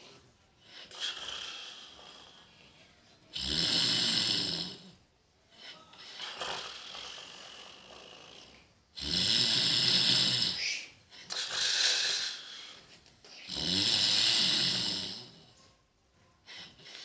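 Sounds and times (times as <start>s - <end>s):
man snoring with buzzing rattle: 3.4s - 5.0s, 6.4s - 10.7s, 13.5s - 15.5s.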